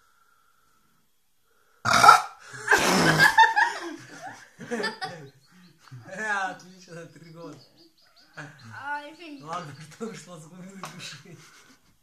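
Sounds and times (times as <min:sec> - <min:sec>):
person belching loudly: 0:01.9 - 0:03.2
bursts of laughter: 0:02.4 - 0:06.0.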